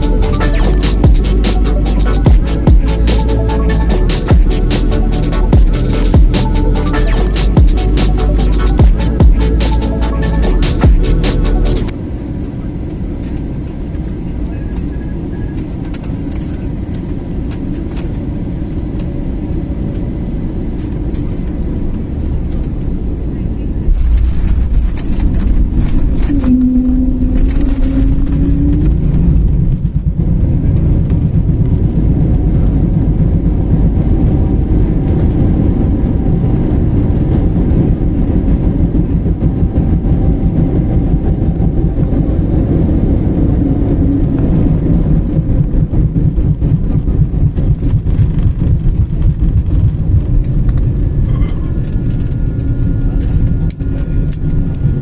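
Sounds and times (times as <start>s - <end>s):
airliner engines rumbling: 27.1s - 55.0s.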